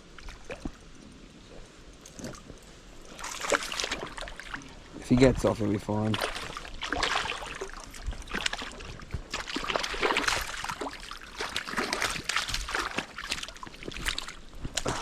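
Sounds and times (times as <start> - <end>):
fish thrashing and splashing water: 2.1 - 4.9, 6.0 - 15.0.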